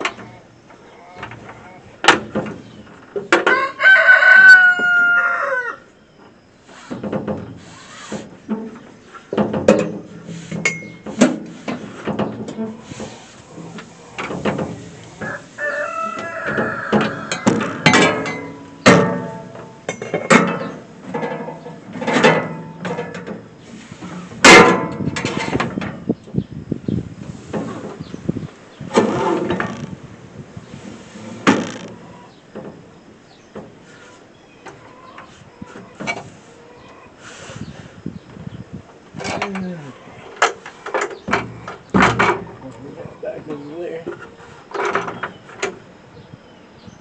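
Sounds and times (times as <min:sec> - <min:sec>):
rooster crowing: 0:03.4 - 0:05.9, 0:15.1 - 0:18.1.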